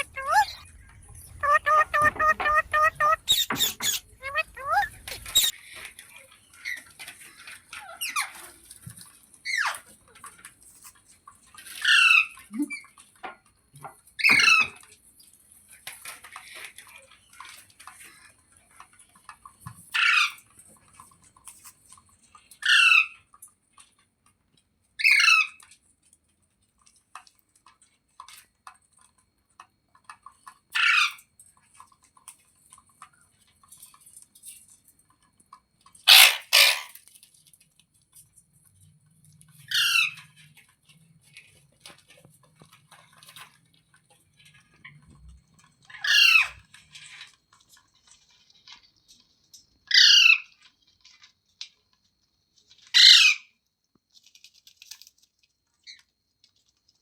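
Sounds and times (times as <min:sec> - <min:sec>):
parrot squawking: 0:00.0 - 0:05.5, 0:36.1 - 0:37.0, 0:49.9 - 0:50.4, 0:53.0 - 0:53.4.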